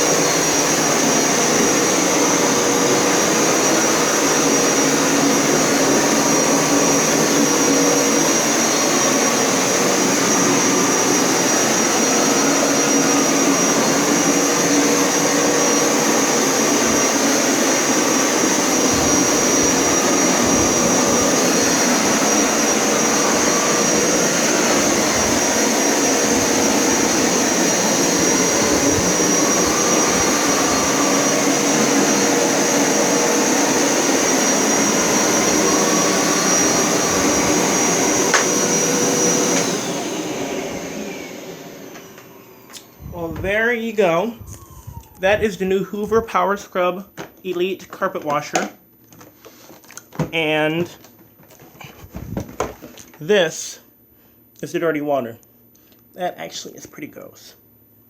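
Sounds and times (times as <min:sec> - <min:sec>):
carpet washer suction motor whine: 0:00.0 - 0:46.2.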